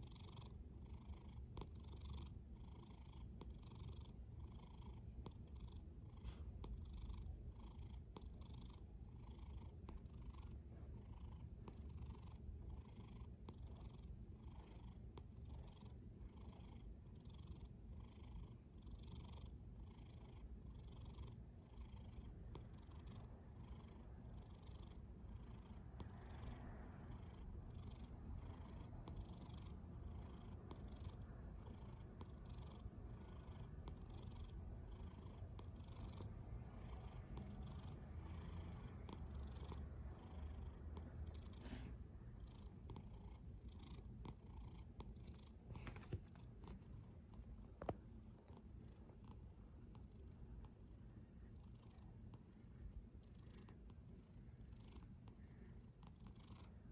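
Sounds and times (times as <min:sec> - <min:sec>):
cat rumbling breaths: 0:25.4 - 0:56.9.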